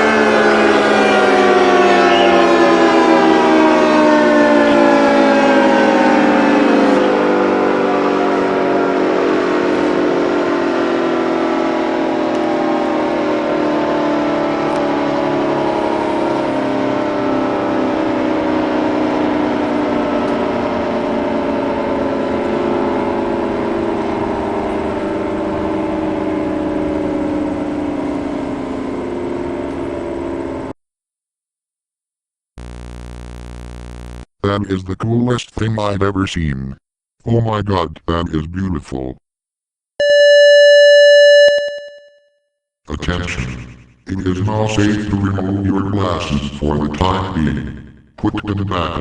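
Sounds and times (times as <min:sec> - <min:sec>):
tornado siren winding down: 0:00.0 - 0:30.8, 0:40.0 - 0:42.0.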